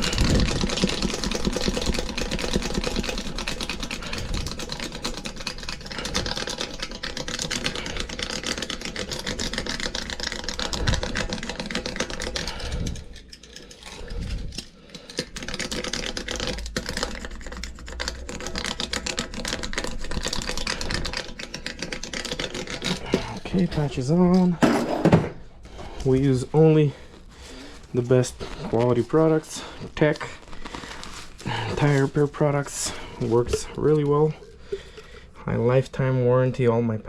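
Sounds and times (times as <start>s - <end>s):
rapid dense clicking and rattling: 0.0s - 25.3s.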